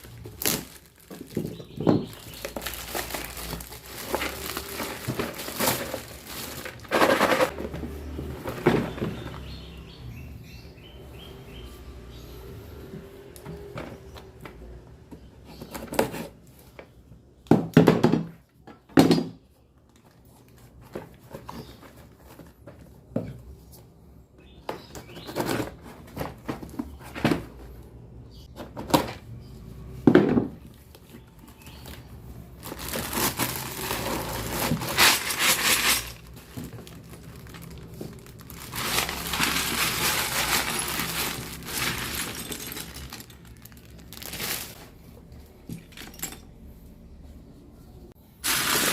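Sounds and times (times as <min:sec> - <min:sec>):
steady rustling: 0:32.4 - 0:45.2.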